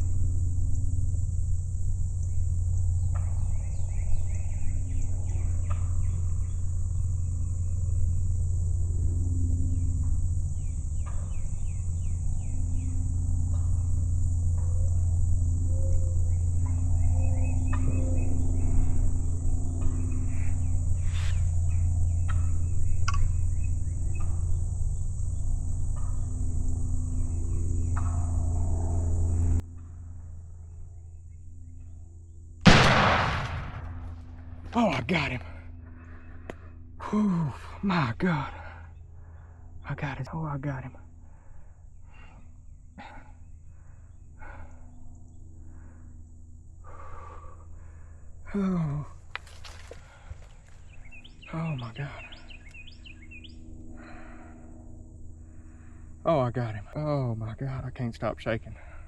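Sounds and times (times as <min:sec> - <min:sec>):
high insect buzz: 0:00.0 - 0:58.8
low hum: 0:00.0 - 0:59.0
person breathing hard: 0:41.2 - 0:45.0, 0:45.6 - 0:48.9, 0:53.9 - 0:56.2, 0:58.7 - 0:59.0.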